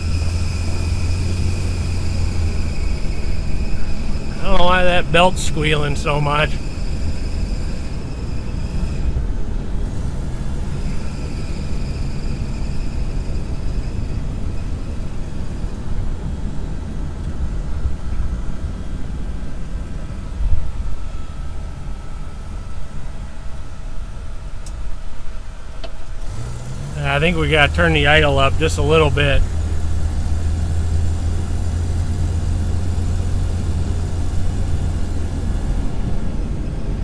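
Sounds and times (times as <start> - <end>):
car engine idling: 0.0 - 8.8, 9.8 - 20.0, 26.2 - 37.0
accessory belt squealing: 0.0 - 8.9.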